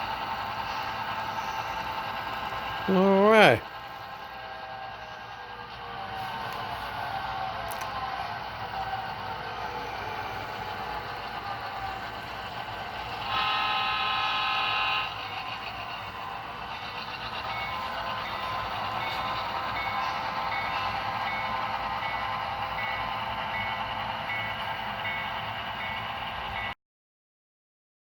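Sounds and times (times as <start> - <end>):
model locomotive engine sound: 0.0 - 26.8
locomotive bell ringing: 17.2 - 26.7.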